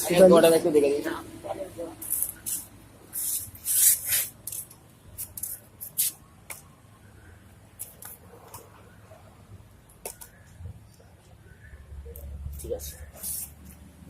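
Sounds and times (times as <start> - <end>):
hissing spray bursts: 2.0 - 6.2, 13.1 - 13.8.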